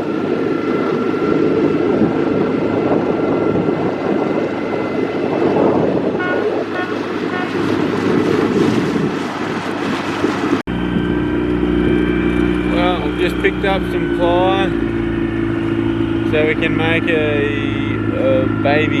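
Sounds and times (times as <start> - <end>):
engine rumbling: 0.0 - 19.0
short pitched toots: 6.2 - 7.8.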